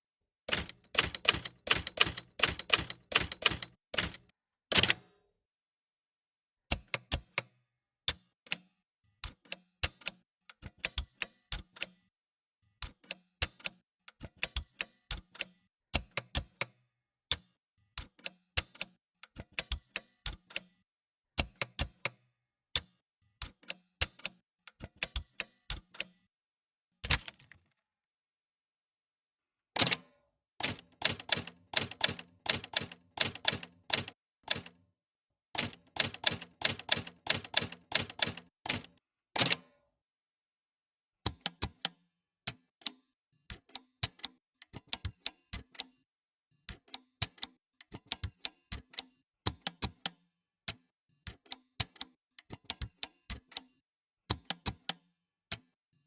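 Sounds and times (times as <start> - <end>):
typewriter keys clacking: 0.5 - 5.0, 30.6 - 34.8, 35.6 - 39.0.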